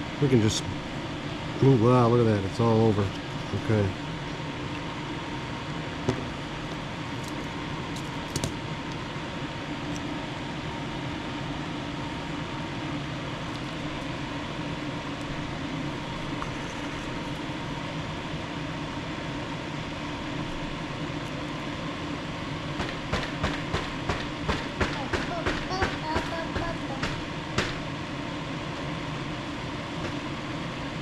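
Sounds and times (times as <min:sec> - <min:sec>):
fan-like whirring hum: 0:00.0 - 0:31.0.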